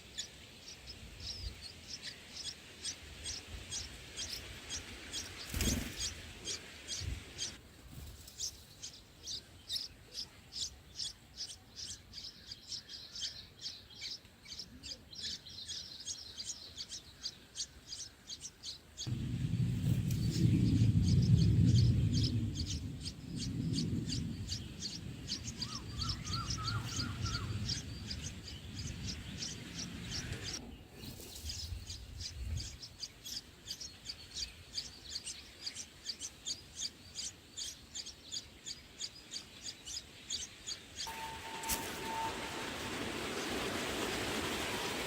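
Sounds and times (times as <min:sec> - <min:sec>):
bulbuls chirping: 0:00.0 - 0:44.4
low rumble: 0:19.1 - 0:30.6.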